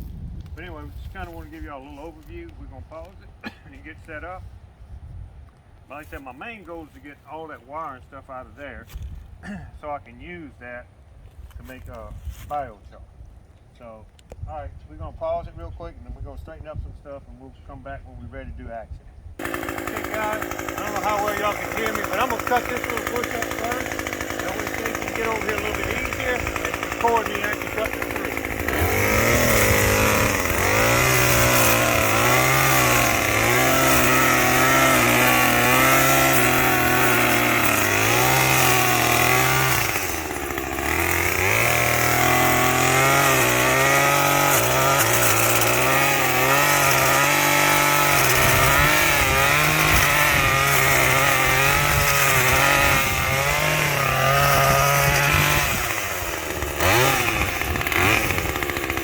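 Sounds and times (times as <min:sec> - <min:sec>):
chainsaw cutting brush: 0:00.1 - 0:04.3, 0:19.4 - 0:59.0.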